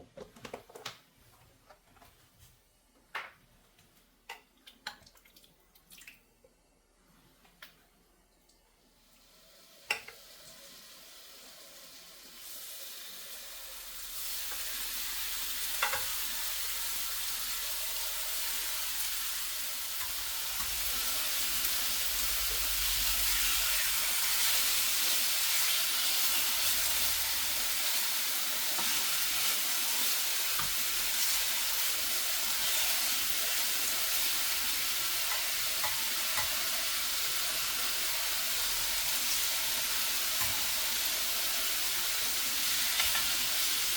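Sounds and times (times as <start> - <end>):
food sizzling in a pan: 9.0 - 43.9.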